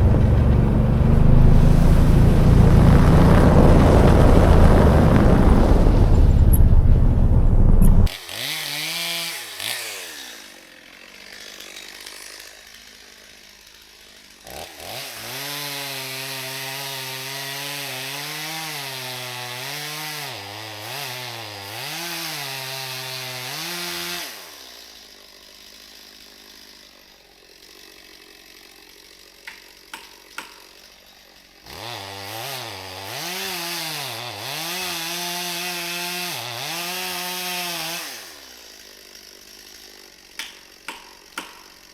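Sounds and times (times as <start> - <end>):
small petrol engine revving: 0.0 - 10.5, 31.7 - 38.8.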